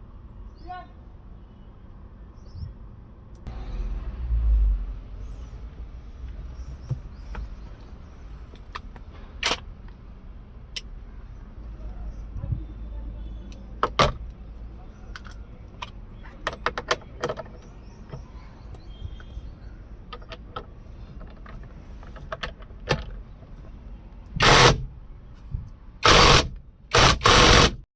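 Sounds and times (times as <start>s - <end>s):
clicks and taps of parts being fitted: 15.0s - 18.3s, 20.0s - 24.4s
loud bursts of noise: 24.4s - 24.9s, 26.0s - 27.9s.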